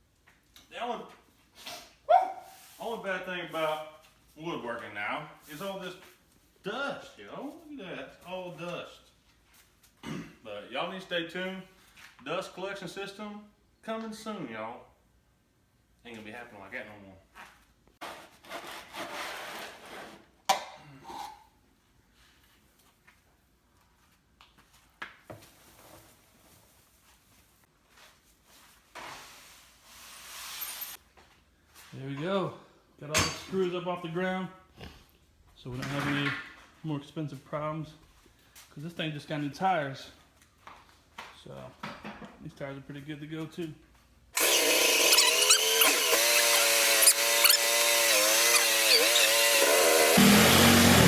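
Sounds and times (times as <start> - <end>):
short high squeaks: 44.4 - 51.0
small engine running: 44.4 - 51.0.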